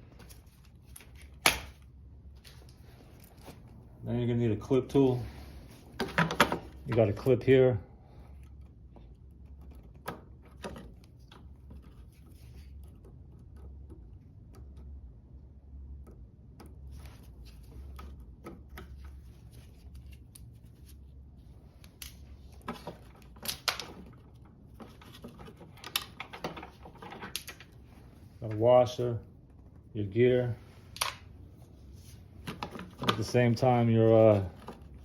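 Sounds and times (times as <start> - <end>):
low steady hum: 0.0 - 35.0.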